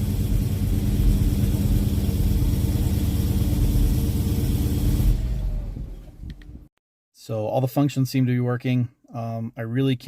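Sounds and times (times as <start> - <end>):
car engine idling: 0.0 - 5.3.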